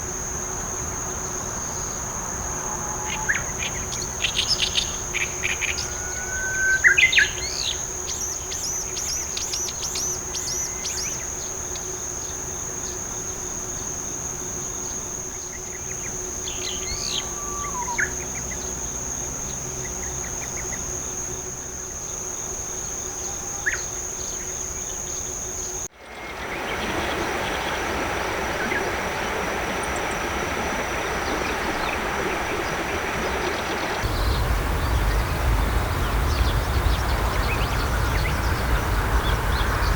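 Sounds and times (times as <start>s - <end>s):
high-pitched insect trill: 0.0s - 26.4s, 34.0s - 39.9s
hissy open-field ambience: 0.0s - 39.9s
bird calling in shrill notes: 2.5s - 7.8s.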